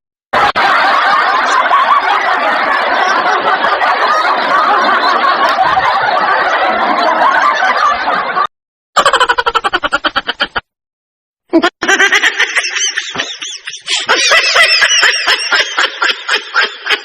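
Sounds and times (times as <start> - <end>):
staccato laugh effect: 0.4 - 6.0, 9.0 - 10.7, 11.5 - 17.0
high-pitched chattering laugh: 9.0 - 10.7, 11.5 - 17.0.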